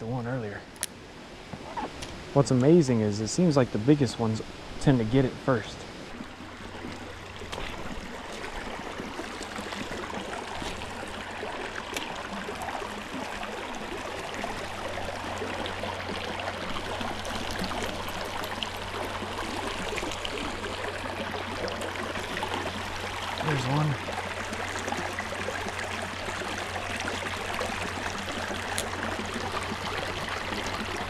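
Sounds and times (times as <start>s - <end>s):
creek water rushing: 0.0s - 31.0s
low steady hum: 0.0s - 31.0s.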